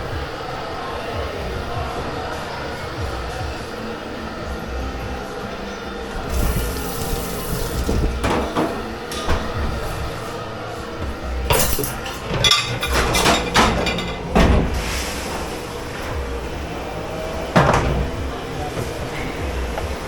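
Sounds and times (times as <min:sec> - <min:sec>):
running water: 0:01.9 - 0:20.0
dishes and pans clattering: 0:06.3 - 0:16.7, 0:17.4 - 0:20.0.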